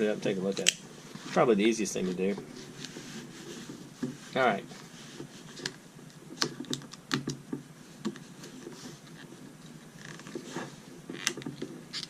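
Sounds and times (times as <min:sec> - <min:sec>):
sharp plastic clicks and taps: 0:06.4 - 0:08.2.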